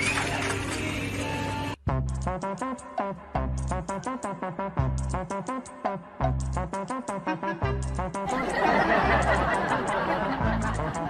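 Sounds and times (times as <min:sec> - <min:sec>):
upbeat music with bass beat: 0:01.8 - 0:11.0
voices and laughter: 0:08.3 - 0:11.0.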